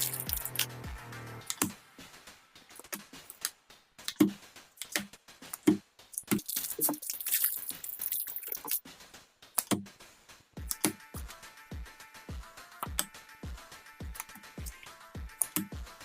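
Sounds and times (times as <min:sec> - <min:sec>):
clicks and taps: 0:02.8 - 0:07.0, 0:09.6 - 0:09.9, 0:10.6 - 0:11.0, 0:12.8 - 0:13.2, 0:14.0 - 0:15.8.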